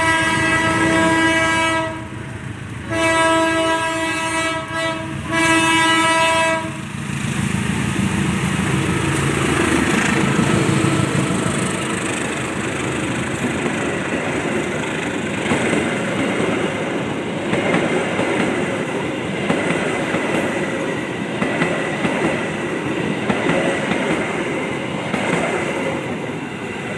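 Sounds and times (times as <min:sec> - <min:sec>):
locomotive horn blast: 0:00.0 - 0:02.2, 0:02.9 - 0:06.8
train rumble: 0:00.0 - 0:26.9
wheels clacking over rail joints: 0:07.2 - 0:26.9.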